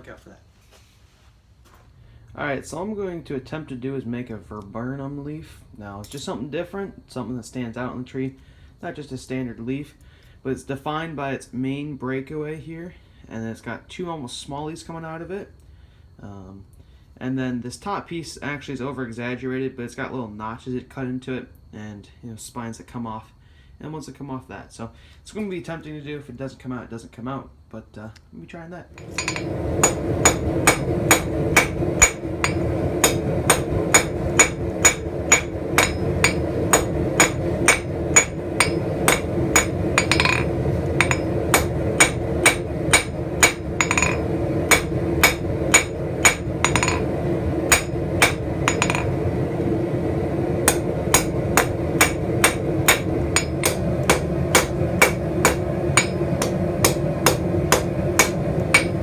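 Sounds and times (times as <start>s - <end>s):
steady hum: 28.9s - 59.0s
hammer striking steel on an anvil: 29.0s - 49.2s, 50.6s - 59.0s.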